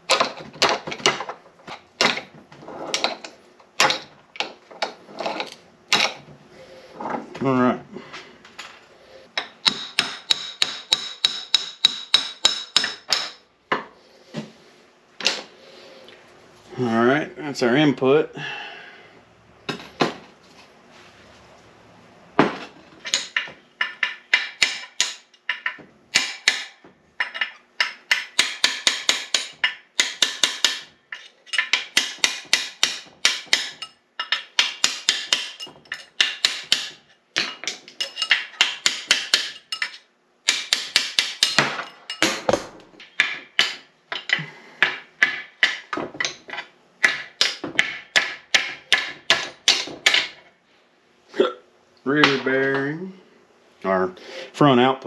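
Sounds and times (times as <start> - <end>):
hammer striking steel: 9.4 - 13.4.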